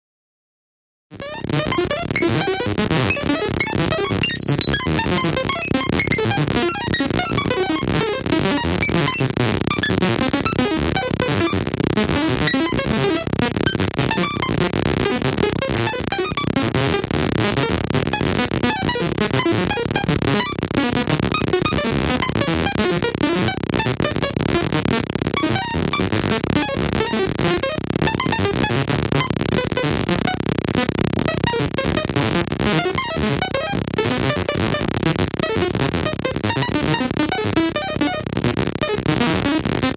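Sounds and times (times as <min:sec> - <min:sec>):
rapid electronic blips and bleeps: 0:01.2 - 0:39.9.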